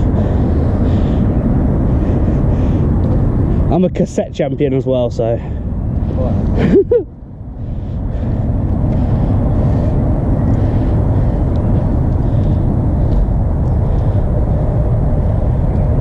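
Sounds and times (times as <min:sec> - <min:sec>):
wind on microphone: 0:00.0 - 0:16.0
bike tyres rolling on concrete: 0:07.7 - 0:16.0.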